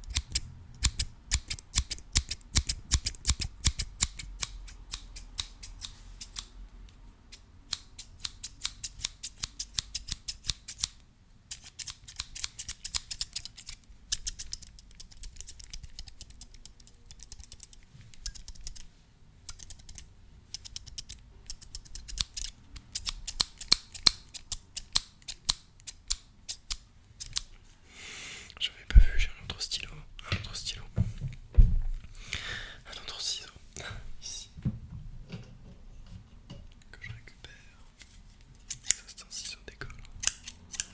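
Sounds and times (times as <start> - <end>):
metal scissors snipping: 0.0 - 6.5, 7.3 - 18.8, 19.4 - 27.5, 38.6 - 40.9.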